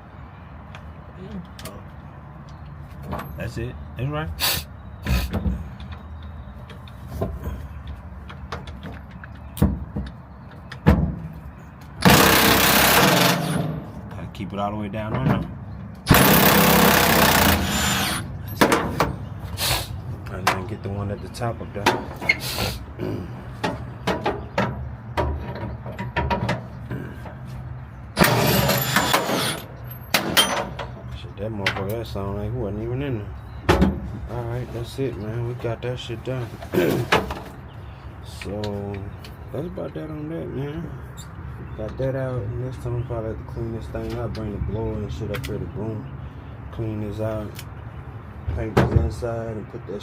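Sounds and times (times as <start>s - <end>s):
hand tools clicking and knocking: 28.2s - 31.0s.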